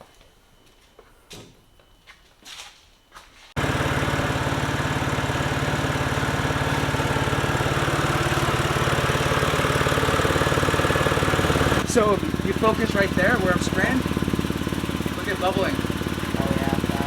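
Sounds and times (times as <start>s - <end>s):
car engine idling: 3.6s - 17.0s
exhaust leak pulsing: 3.6s - 17.0s.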